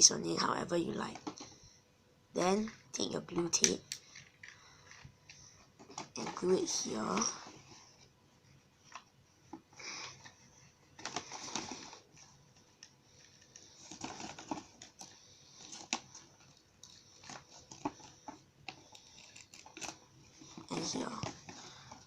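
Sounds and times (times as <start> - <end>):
paper rustling: 10.0 - 22.0.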